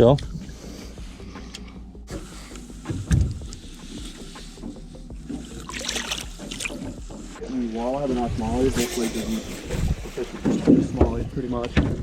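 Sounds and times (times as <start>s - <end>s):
wind and water rumble: 0.0s - 12.0s
dull thump: 2.1s - 3.6s.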